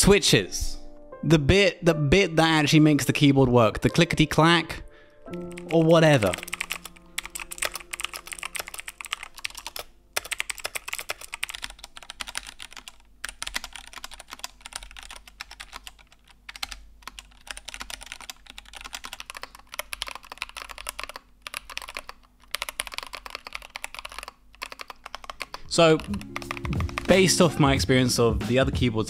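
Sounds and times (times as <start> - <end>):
mechanical keyboard typing: 5.3 - 27.6.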